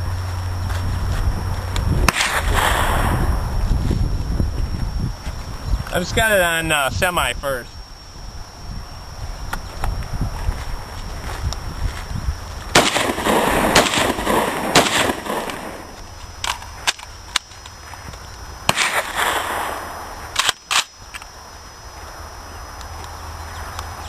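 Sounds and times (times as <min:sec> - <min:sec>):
gunshots with rolling echo: 0:12.7 - 0:15.9.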